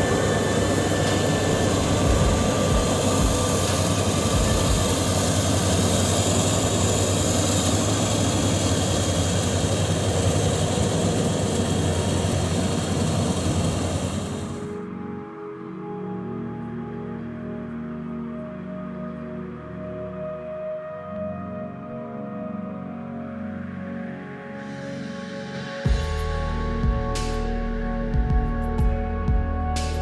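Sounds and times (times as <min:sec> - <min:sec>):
combine harvester droning: 0:00.0 - 0:14.8.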